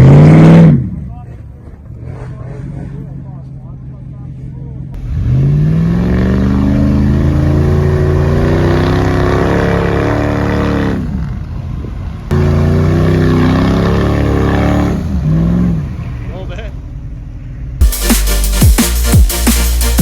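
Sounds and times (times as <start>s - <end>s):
truck engine revving hard: 0.0s - 3.5s, 5.0s - 16.8s.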